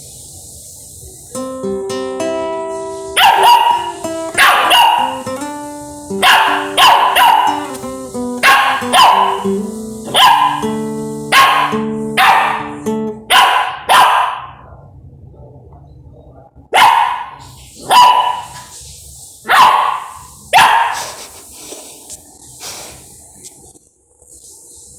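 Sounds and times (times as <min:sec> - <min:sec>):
acoustic guitar playing: 0:01.3 - 0:13.8
dog barking: 0:03.0 - 0:14.7, 0:16.7 - 0:18.7, 0:19.4 - 0:21.4.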